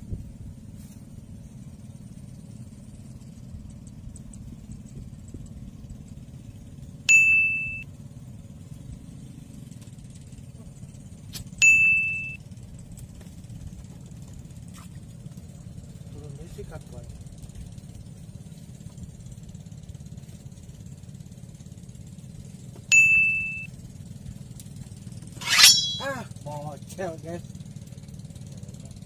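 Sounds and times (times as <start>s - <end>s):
bright single-pitched dings: 7.1s - 7.8s, 11.6s - 12.4s, 22.9s - 23.7s.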